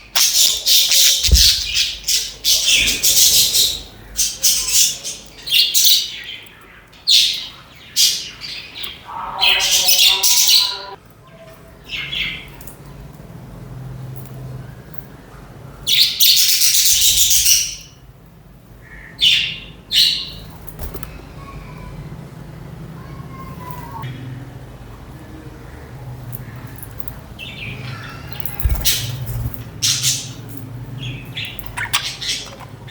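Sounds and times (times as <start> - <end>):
budgerigars chirping and squawking: 0.2 - 11.0, 26.4 - 32.9.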